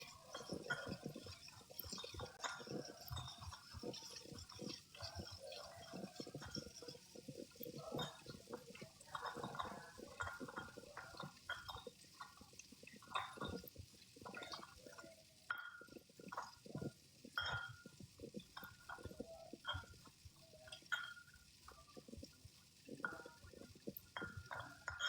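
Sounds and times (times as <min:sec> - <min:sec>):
small knocks and clatters: 0:00.0 - 0:25.0
water splashing and dripping: 0:00.0 - 0:25.0.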